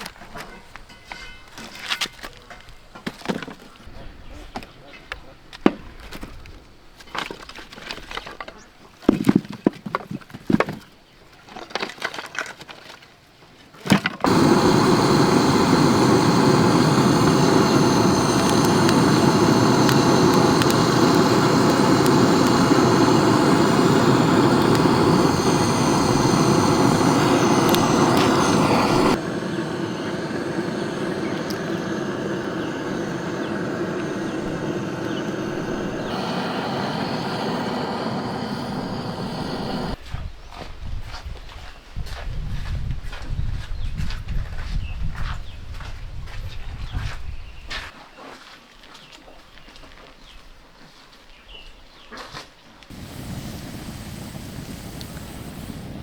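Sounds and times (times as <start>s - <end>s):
loud steady motor: 14.3s - 40.0s.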